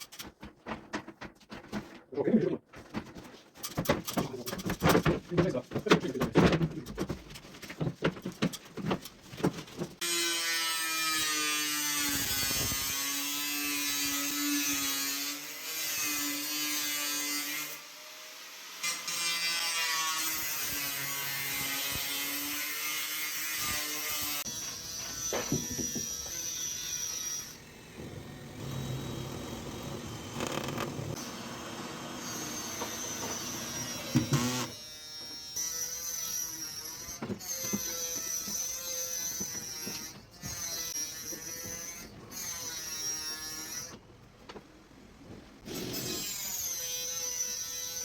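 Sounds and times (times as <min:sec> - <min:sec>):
electric power tool running: 0:27.5 - 0:34.7.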